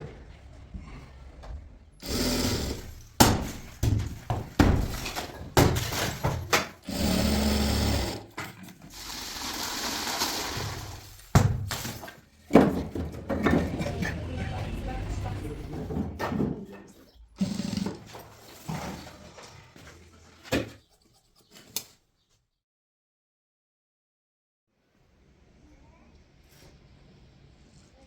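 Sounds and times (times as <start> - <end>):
demolition knocks and bangs: 1.6 - 6.9, 11.0 - 17.1
machine noise: 2.0 - 3.8, 6.8 - 8.3.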